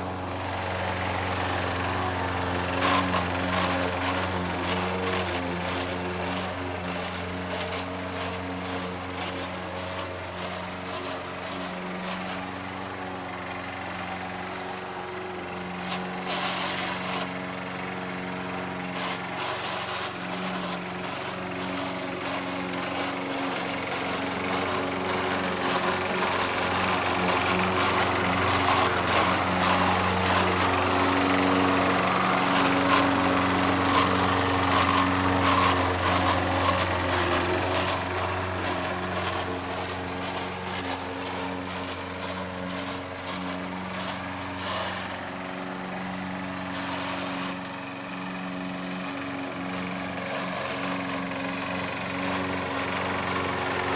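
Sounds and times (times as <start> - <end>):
lawn mower cutting grass: 0.0 - 53.9.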